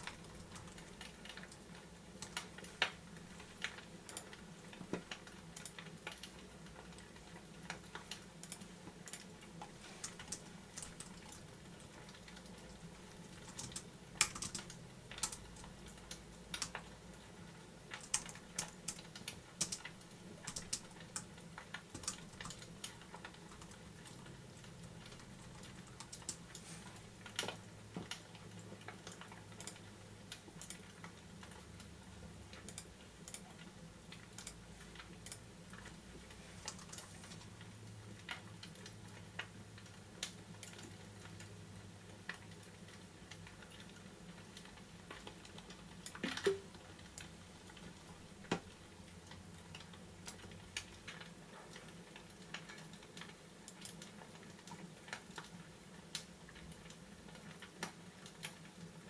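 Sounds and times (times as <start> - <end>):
sharp clicks and crackles: 0.0 - 16.9, 17.9 - 26.6.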